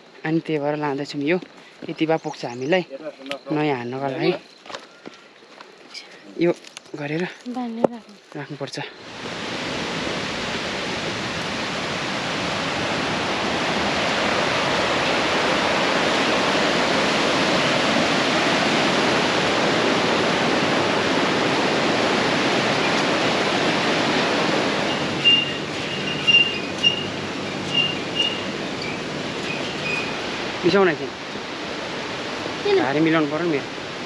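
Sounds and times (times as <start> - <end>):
water rushing: 8.2 - 34.0
short high chirps: 24.9 - 30.2.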